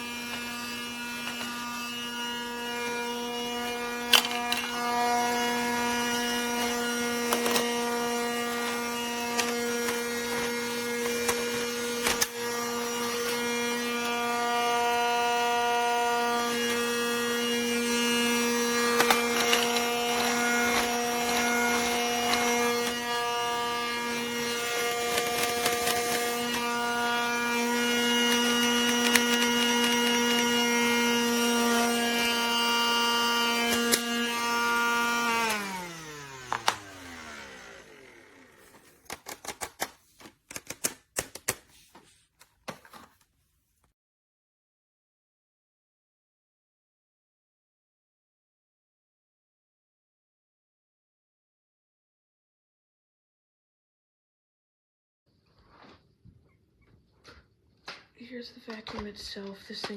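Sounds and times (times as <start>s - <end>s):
small electric motor humming: 0.0s - 39.6s.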